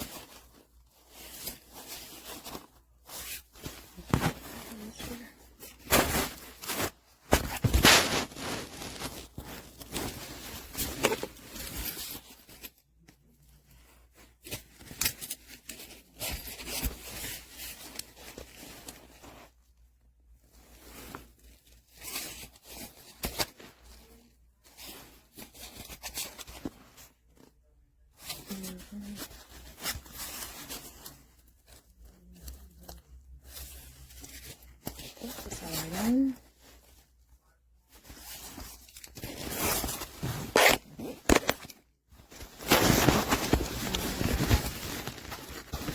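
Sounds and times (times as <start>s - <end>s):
backpack rustling and scraping: 0.0s - 12.3s, 38.0s - 45.9s.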